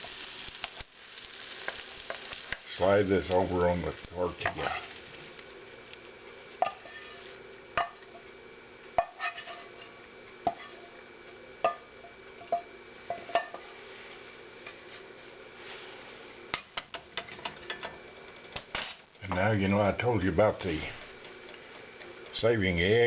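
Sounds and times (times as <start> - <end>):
utensil scraping a skillet: 4.3 - 5.4, 6.5 - 8.3, 9.0 - 11.0, 20.4 - 22.7.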